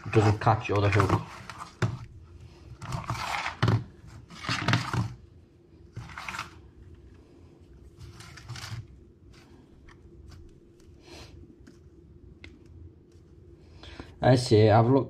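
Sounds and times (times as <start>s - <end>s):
fishing line rustling scrapes: 7.5s - 11.9s.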